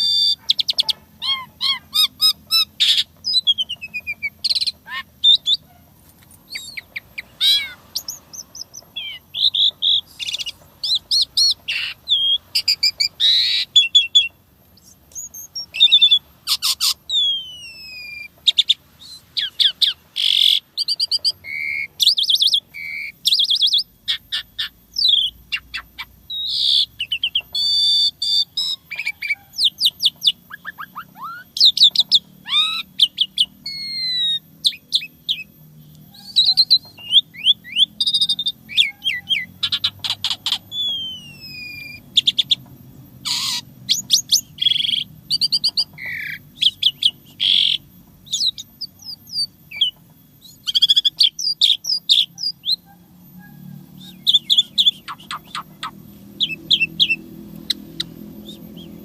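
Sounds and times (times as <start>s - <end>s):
starling singing: 0.0s - 59.0s.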